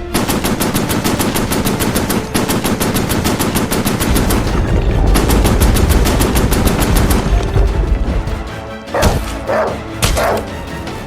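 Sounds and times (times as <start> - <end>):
rapid automatic gunfire: 0.0 - 8.1
deep rumble: 4.0 - 8.7.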